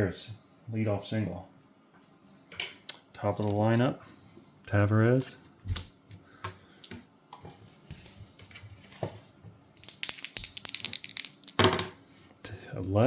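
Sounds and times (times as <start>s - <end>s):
dice rattling and clattering: 9.8s - 12.0s.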